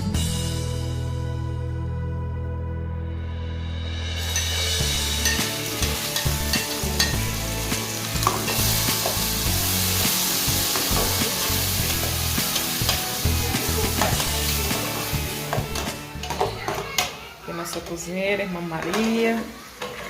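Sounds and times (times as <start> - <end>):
food sizzling in a pan: 4.1 - 20.0.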